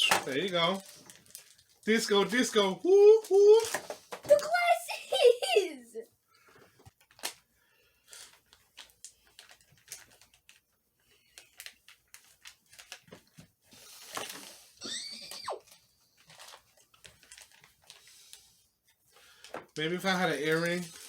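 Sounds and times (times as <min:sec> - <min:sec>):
high squeaky sound: 0:00.0 - 0:00.2, 0:14.8 - 0:15.6
plastic packaging crinkling and tearing: 0:00.0 - 0:02.5, 0:07.0 - 0:07.4, 0:08.1 - 0:13.4, 0:14.0 - 0:18.4, 0:20.1 - 0:21.0.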